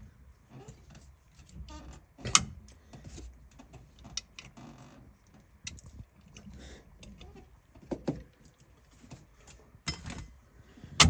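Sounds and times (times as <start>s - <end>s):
small clicks and light rattles: 0.8s - 9.6s.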